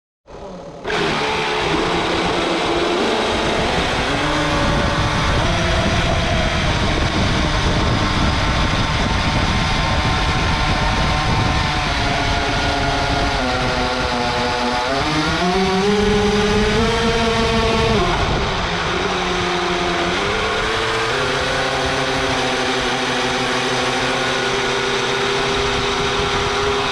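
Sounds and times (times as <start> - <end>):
wind: 0.2 - 26.9
rc boat motor running: 0.3 - 26.9.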